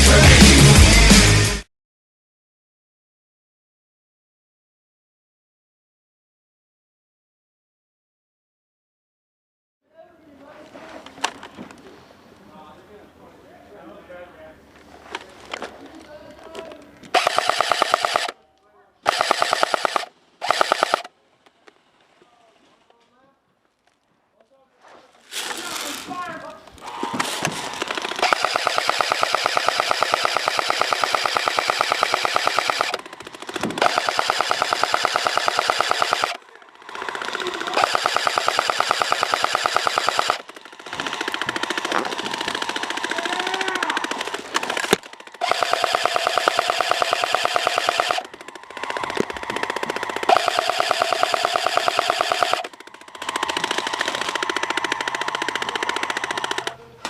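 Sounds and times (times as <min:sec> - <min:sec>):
airsoft gun full-auto bursts: 0:17.1 - 0:18.4, 0:19.0 - 0:21.1, 0:26.9 - 0:56.8.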